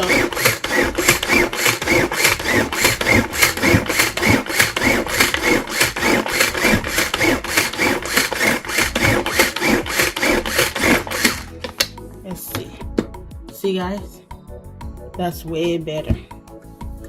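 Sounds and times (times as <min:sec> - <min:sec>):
food chopper chopping leaves: 0:00.0 - 0:11.8.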